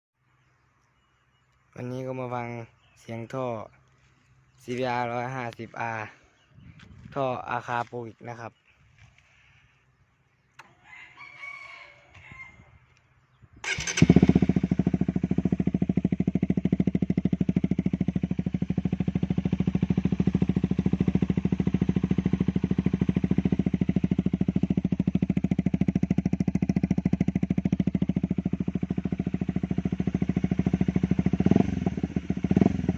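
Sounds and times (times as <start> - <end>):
motorcycle engine idling: 13.6 - 32.9.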